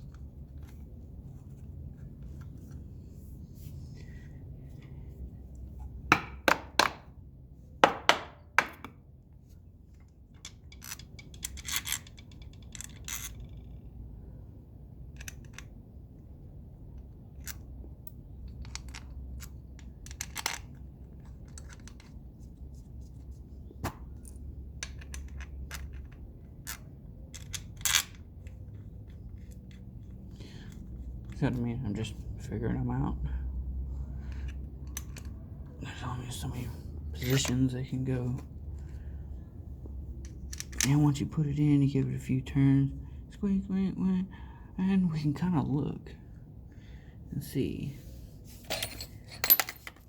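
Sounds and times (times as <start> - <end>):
metal bolts clinking on metal: 37.1 - 37.7, 48.7 - 50.0.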